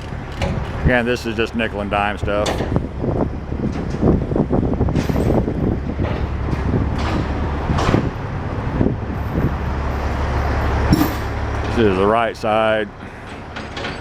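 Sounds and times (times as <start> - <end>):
short knocks and clicks: 0.0 - 1.1, 2.4 - 2.9
engine rumbling: 0.0 - 14.0.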